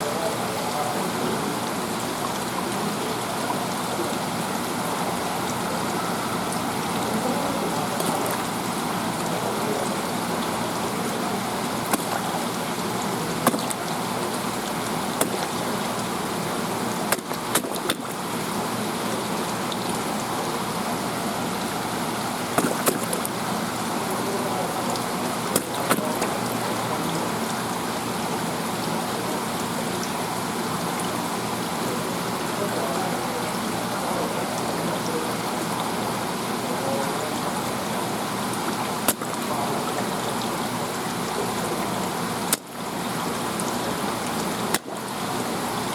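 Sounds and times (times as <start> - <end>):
rushing water: 0.0 - 45.9
fish crunching sea urchin: 11.8 - 16.4, 17.0 - 18.2, 22.5 - 23.4, 25.5 - 26.6, 39.0 - 39.5.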